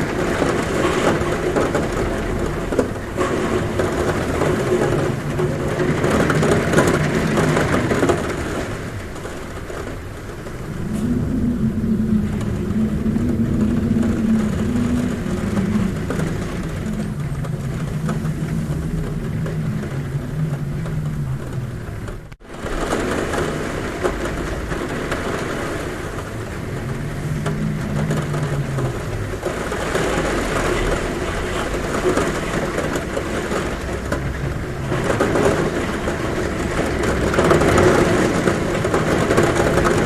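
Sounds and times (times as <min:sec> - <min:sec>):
heavy rain on a roof: 0:00.0 - 0:40.0
low droning hum: 0:10.4 - 0:22.4.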